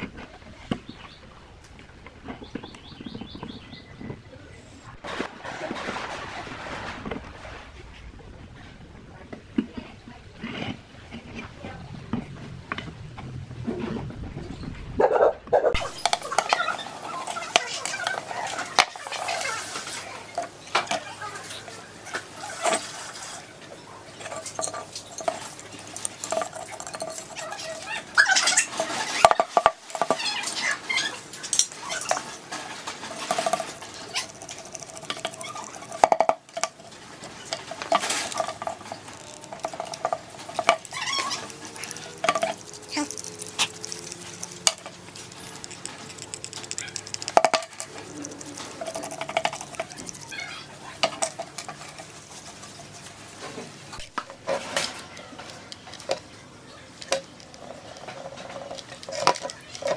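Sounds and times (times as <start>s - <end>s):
metal tools clinking and scraping: 24.1s - 59.9s.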